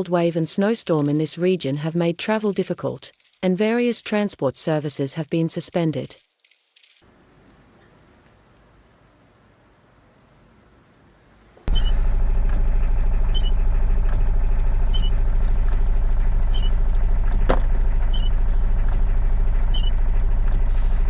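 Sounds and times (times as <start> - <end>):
short squeak: 11.7 - 12.1, 13.1 - 15.2, 16.3 - 16.8, 17.5 - 18.4, 19.6 - 20.0
vehicle engine running: 11.7 - 21.0.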